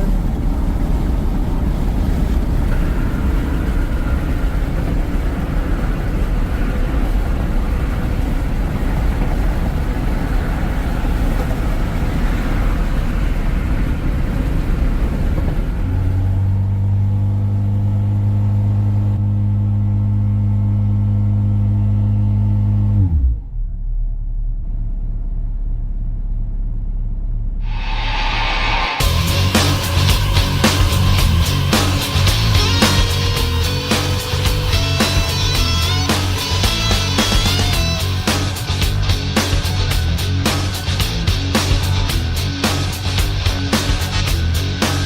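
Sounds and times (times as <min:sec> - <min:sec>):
car engine running: 0:28.7 - 0:45.0.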